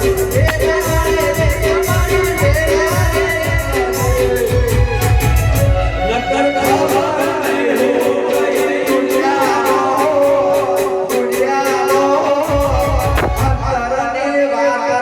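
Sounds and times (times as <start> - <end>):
high percussion beat: 0.0 - 5.3, 12.8 - 13.9.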